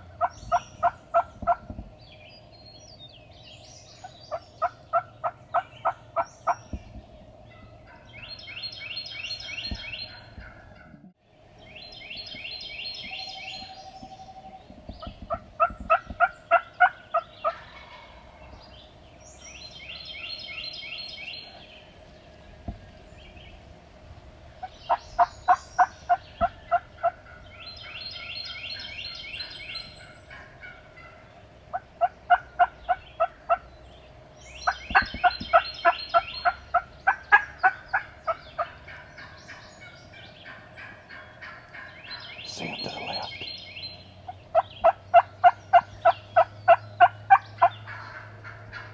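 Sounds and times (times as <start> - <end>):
turkey gobbling: 0.2 - 1.7, 4.3 - 6.7, 9.7 - 11.1, 13.4 - 18.6, 24.6 - 33.7, 34.7 - 42.3, 44.5 - 48.9
turkey yelps: 15.0 - 18.4, 24.6 - 33.7, 34.7 - 41.9, 44.5 - 48.9.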